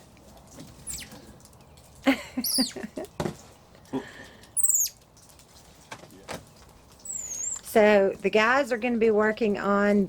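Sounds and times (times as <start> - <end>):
monkeys squeaking: 0.8 - 1.2, 2.4 - 2.9, 4.6 - 5.0, 7.0 - 7.7.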